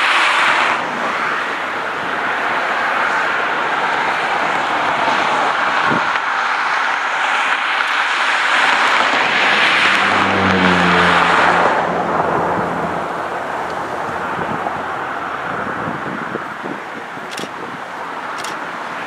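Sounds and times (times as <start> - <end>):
rushing vehicle noise: 0.0 - 19.0
low engine hum: 7.9 - 19.0.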